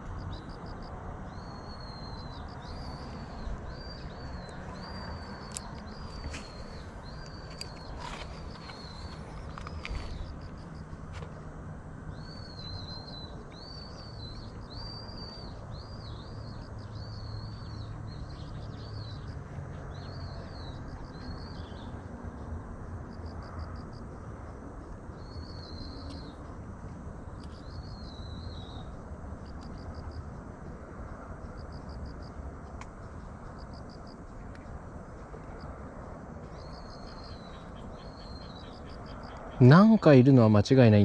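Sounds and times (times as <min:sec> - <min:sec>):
low outdoor rush: 0:00.0 - 0:41.0
insect-like chirping: 0:00.2 - 0:11.3, 0:27.2 - 0:41.0.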